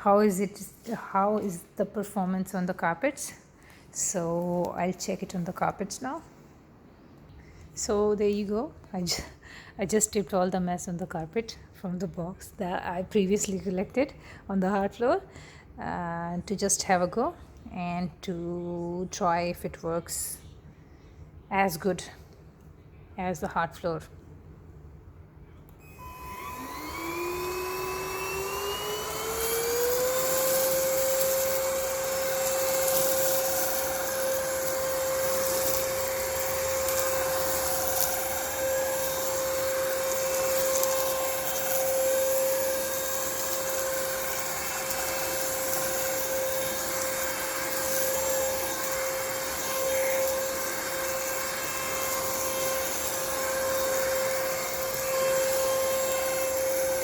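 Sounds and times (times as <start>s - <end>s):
vacuum cleaner motor whine: 0.0s - 6.2s, 25.8s - 57.0s
vacuum airflow hiss: 26.0s - 57.0s.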